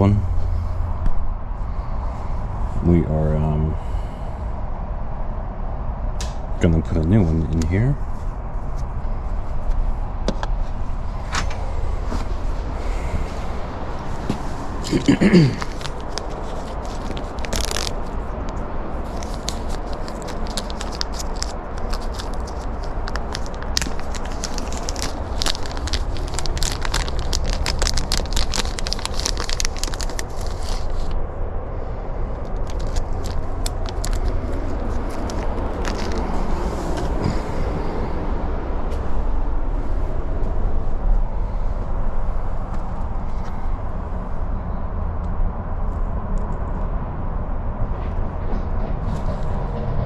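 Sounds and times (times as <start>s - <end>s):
steady low rumble: 0.0s - 50.0s
crackling and scraping of small parts: 14.2s - 31.2s, 32.4s - 37.4s
soft rustling: 19.0s - 31.2s.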